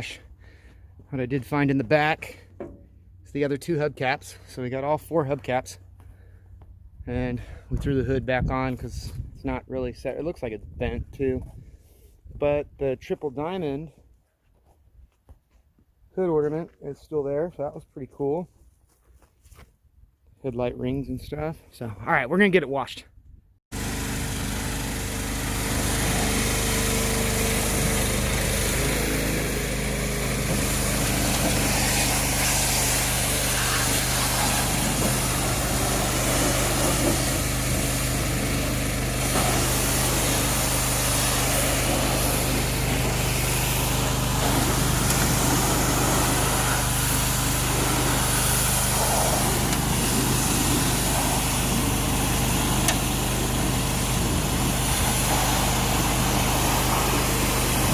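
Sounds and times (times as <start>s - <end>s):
pressure washer motor humming: 23.7s - 57.9s
water spray hissing: 25.5s - 57.9s.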